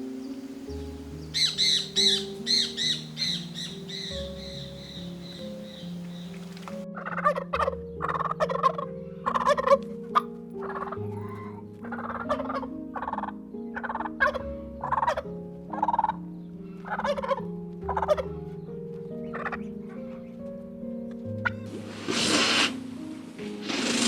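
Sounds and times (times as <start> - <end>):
soft background music: 0.0 - 24.0
fowl calling: 1.3 - 16.2.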